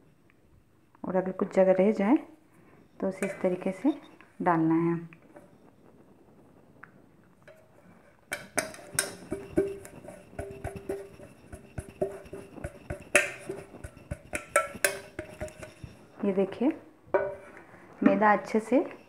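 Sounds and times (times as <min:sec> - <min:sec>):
metal pot knocking and ringing: 0:03.2 - 0:03.8, 0:08.3 - 0:16.2, 0:17.1 - 0:19.0.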